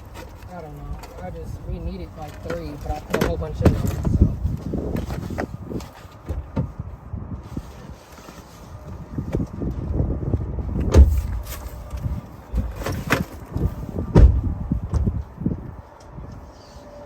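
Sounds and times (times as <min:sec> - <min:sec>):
heavy thumps: 0:14.1 - 0:15.2.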